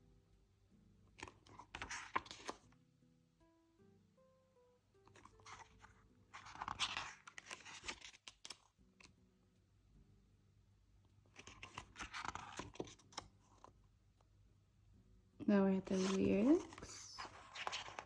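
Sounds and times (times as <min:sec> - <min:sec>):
paper pages rustling: 0:01.2 - 0:02.7, 0:05.1 - 0:09.1, 0:11.3 - 0:13.7, 0:15.8 - 0:18.0.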